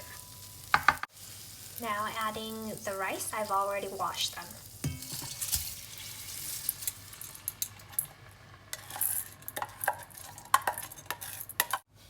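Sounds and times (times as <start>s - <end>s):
rice sizzling in butter: 0.0s - 11.6s
utensil scraping a pot: 8.7s - 11.8s.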